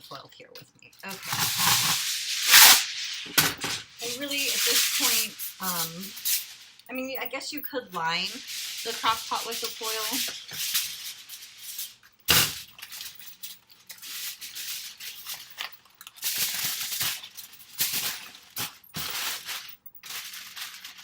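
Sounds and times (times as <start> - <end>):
aluminum foil crumpling: 1.0 - 21.0.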